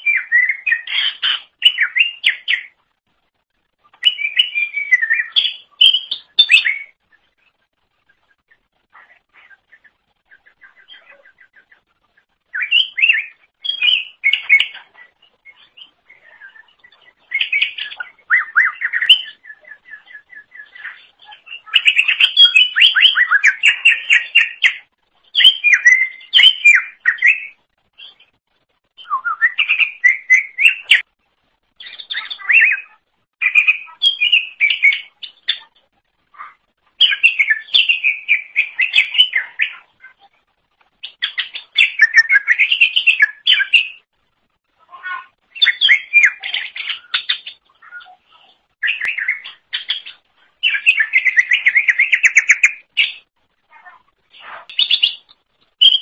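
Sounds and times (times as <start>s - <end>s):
bird chirping and warbling: 0.0s - 3.0s, 3.7s - 28.4s, 29.0s - 44.1s, 44.8s - 56.0s.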